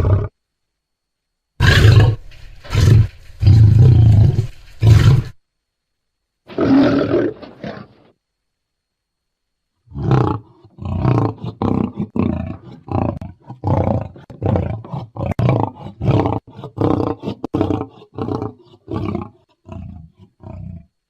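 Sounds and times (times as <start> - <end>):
lion roaring: 0.0 - 0.3, 1.6 - 5.4, 6.5 - 8.1, 9.9 - 21.0.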